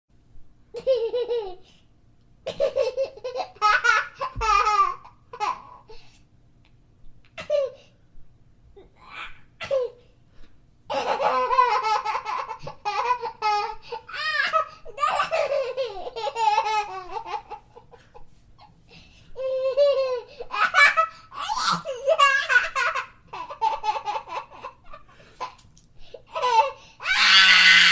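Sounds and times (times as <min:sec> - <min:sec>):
child laughing: 0:00.8 - 0:01.6, 0:02.6 - 0:05.8, 0:10.9 - 0:18.2, 0:19.4 - 0:25.6, 0:26.3 - 0:27.9.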